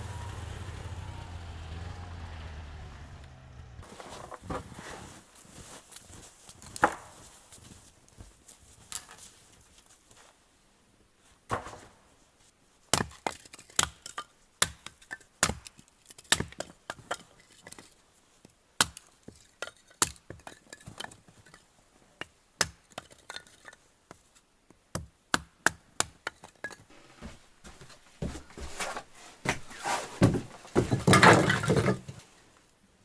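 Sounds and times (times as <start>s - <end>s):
wood being struck: 30.2s - 32.2s.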